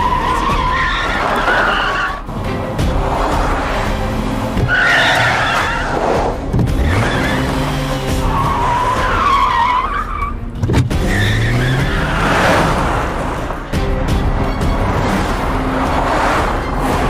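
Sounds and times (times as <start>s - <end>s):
tyres squealing: 0.0s - 2.3s, 4.4s - 12.8s
car engines revving: 0.0s - 17.0s.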